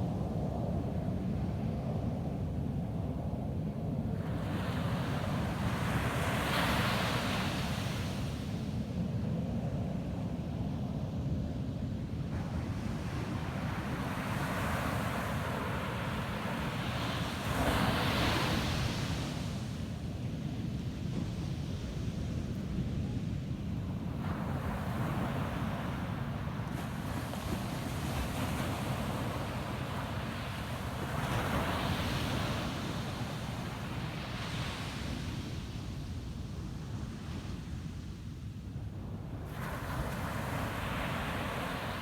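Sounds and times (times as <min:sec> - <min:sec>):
waves breaking on beach: 0:39.5 - 0:42.0.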